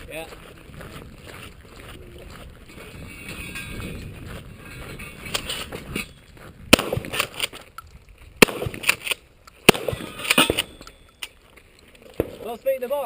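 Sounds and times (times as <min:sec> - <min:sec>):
light clicks and clinks: 0:02.7 - 0:06.4
shotgun shots: 0:06.7 - 0:07.5, 0:08.4 - 0:10.8.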